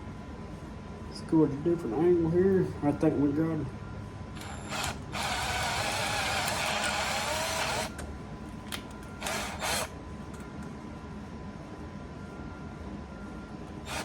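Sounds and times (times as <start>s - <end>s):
cordless drill driving screw: 4.4s - 8.0s, 9.2s - 9.9s.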